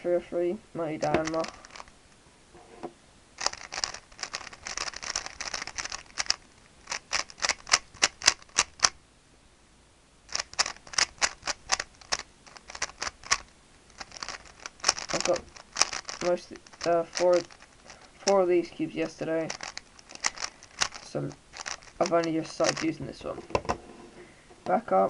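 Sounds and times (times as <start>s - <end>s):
speed cube layers clacking: 1.0s - 1.9s, 3.4s - 9.0s, 10.3s - 23.4s.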